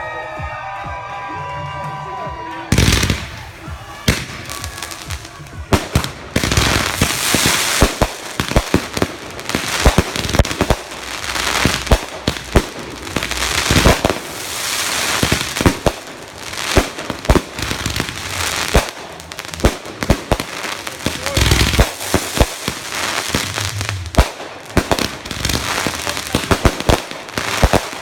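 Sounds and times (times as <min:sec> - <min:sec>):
fireworks bangs: 0:02.7 - 0:28.0
hissing crackle: 0:06.5 - 0:28.0.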